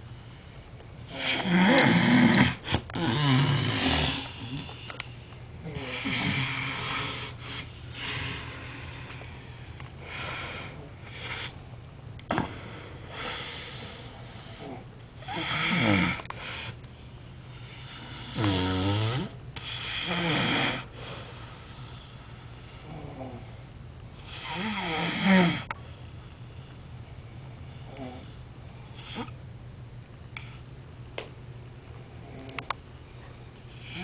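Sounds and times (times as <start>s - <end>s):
man snoring heavily: 1.1s - 4.7s, 5.6s - 7.4s, 13.1s - 16.8s, 17.8s - 20.9s, 24.3s - 25.7s.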